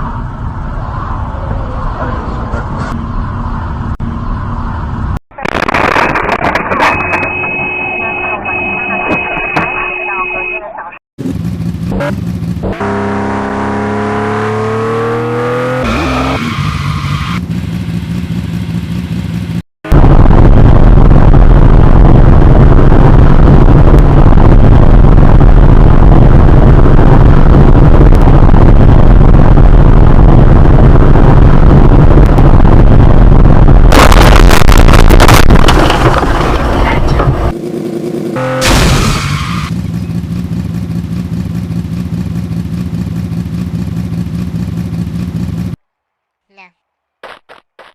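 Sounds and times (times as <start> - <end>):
engine revving: 11.2 - 20.1, 37.2 - 45.8.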